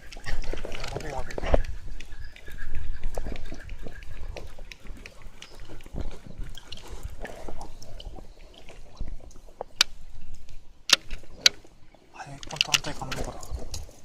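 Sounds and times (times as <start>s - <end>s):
water sloshing and dripping: 0.0s - 14.0s
small clicks and knocks: 9.2s - 11.7s, 12.4s - 14.0s.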